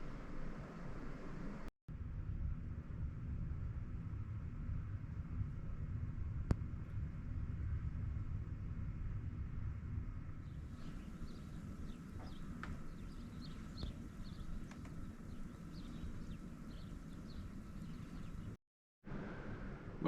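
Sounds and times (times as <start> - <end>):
steady low rumble: 0.0 - 20.0
small birds chirping: 10.5 - 18.6.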